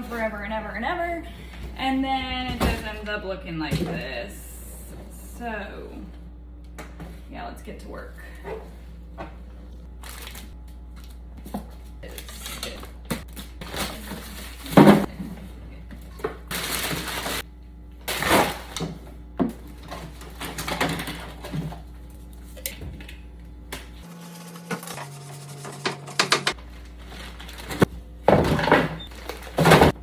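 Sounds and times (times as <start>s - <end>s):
packages rustling: 9.8s - 17.4s, 26.6s - 30.0s
frozen packages knocking and clattering: 10.0s - 17.4s, 18.0s - 22.0s, 26.5s - 30.0s.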